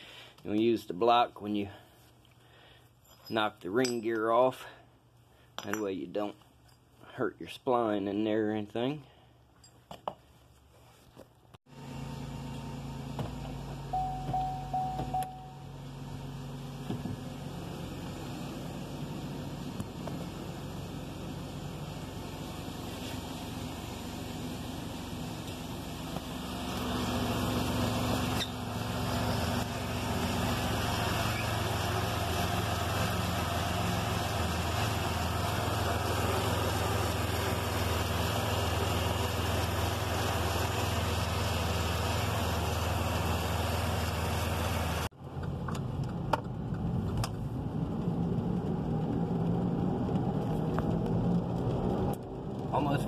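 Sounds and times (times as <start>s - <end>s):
car engine and road noise: 11.6s - 53.0s.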